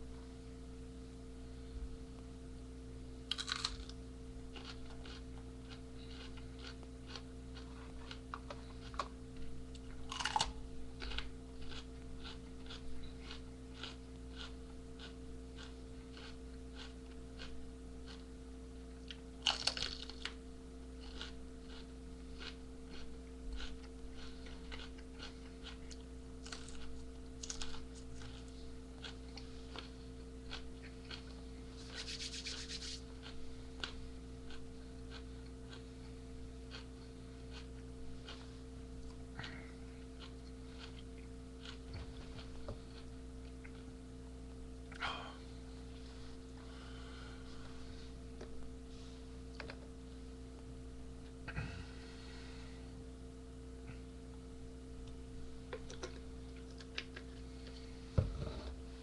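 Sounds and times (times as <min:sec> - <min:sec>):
chewing and crunching pepper: 0:03.2 - 0:48.8, 0:55.0 - 0:58.1.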